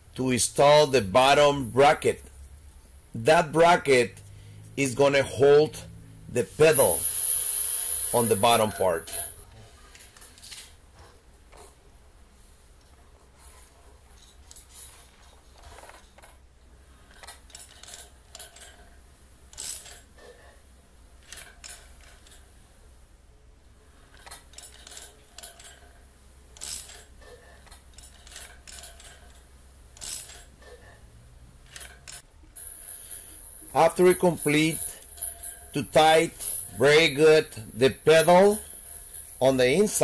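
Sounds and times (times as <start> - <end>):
metallic clicks and clinks: 6.7 - 10.8, 17.1 - 20.5, 21.2 - 22.5, 24.1 - 26.0, 26.6 - 31.0, 31.6 - 40.0.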